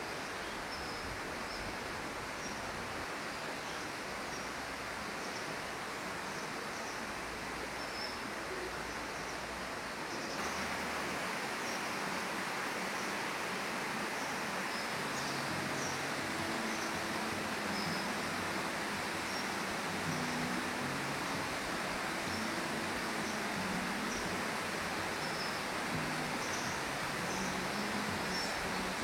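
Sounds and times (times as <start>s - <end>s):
outdoor ambient noise: 0.0s - 29.0s
small birds chirping: 14.0s - 29.0s.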